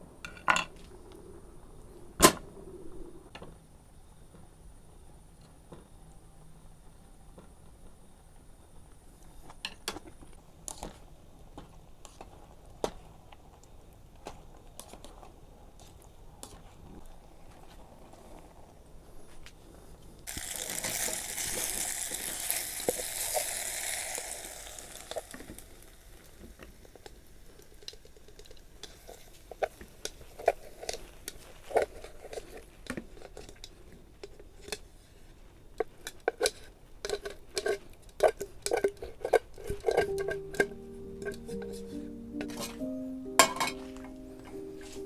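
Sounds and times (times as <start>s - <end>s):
crackles and clicks: 20.2s - 34.8s, 35.4s - 45.0s
food sizzling in hot pan: 20.3s - 29.4s.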